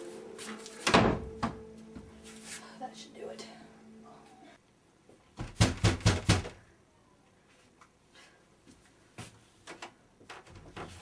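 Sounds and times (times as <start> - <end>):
knocking on a door: 5.4 - 6.6.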